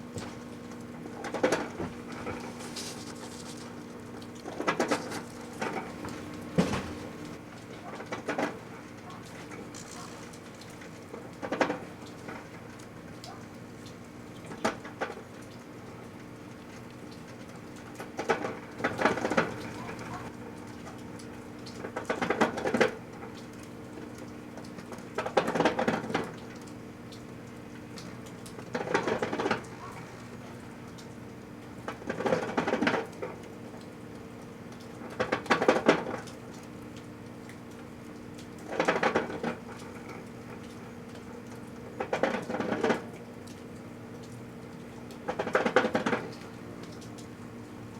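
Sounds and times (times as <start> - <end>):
microwave oven humming: 0.0 - 47.9
crackling and rattling: 0.2 - 7.4.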